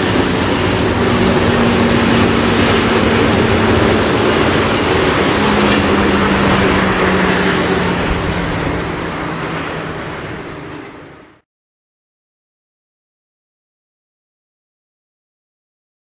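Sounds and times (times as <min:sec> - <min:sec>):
train rolling past: 0:00.0 - 0:11.4.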